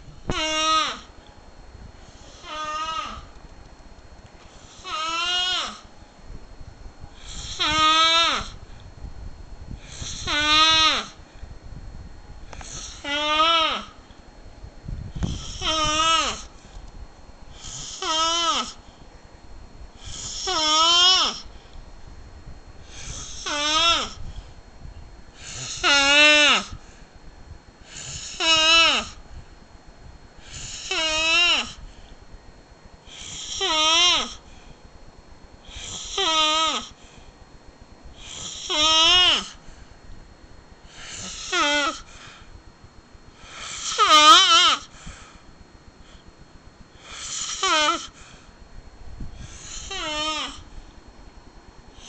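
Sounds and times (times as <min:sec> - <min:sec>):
loud snoring: 0:17.6 - 0:18.8, 0:25.4 - 0:26.6, 0:38.2 - 0:39.5, 0:47.0 - 0:48.2, 0:49.4 - 0:50.6.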